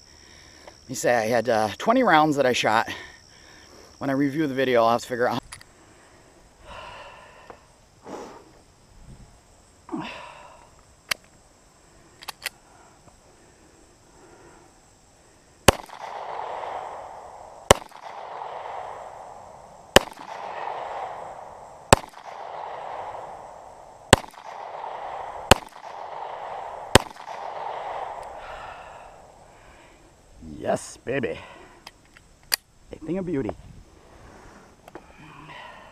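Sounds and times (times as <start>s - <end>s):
small metallic clicks: 12.2s - 12.6s, 31.8s - 32.7s
pistol shots with echo: 15.7s - 28.4s.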